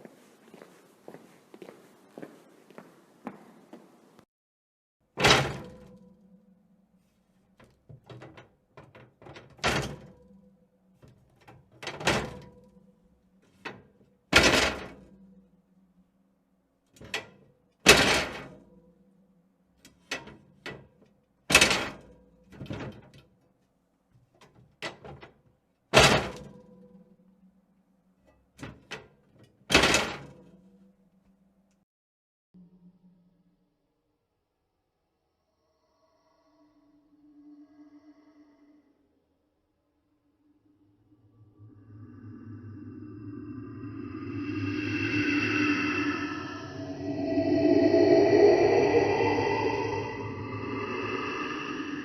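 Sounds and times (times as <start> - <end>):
low ringing tone: 40.8 - 52.0.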